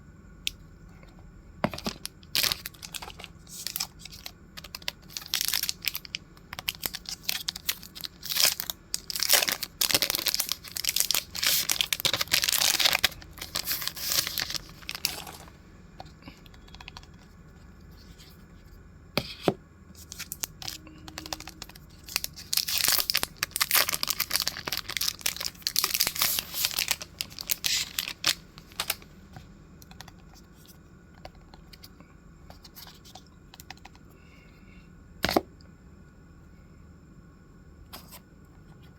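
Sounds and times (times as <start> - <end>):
packaging torn and crinkled: 1.8 - 15.4, 20.1 - 29.0.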